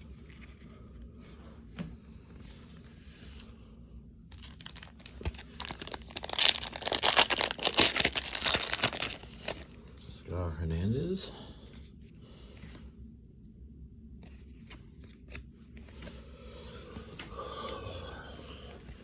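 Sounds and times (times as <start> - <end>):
foil wrapper rustling: 4.3 - 9.8
foil wrapper tearing: 4.4 - 9.7.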